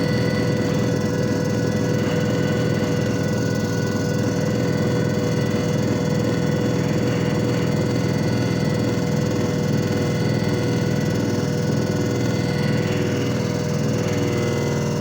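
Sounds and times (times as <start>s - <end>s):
steady high-pitched tone: 0.0s - 11.0s
fast pulsing rumble: 0.0s - 15.0s
machine motor humming: 0.0s - 15.0s.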